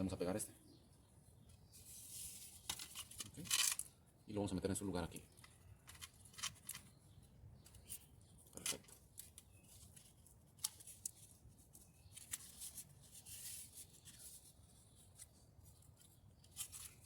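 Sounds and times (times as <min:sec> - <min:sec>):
soft rustle of hands: 0:01.4 - 0:03.2, 0:07.6 - 0:17.0.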